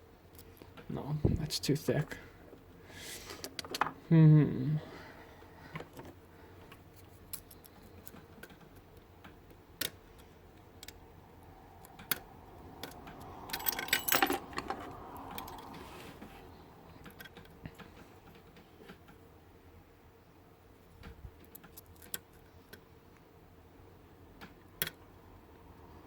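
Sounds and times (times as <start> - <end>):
lock picks clicking and scraping: 5.9 - 11.0, 11.8 - 15.8, 17.0 - 18.6, 21.4 - 22.9
jingling rattling metal: 13.5 - 14.8.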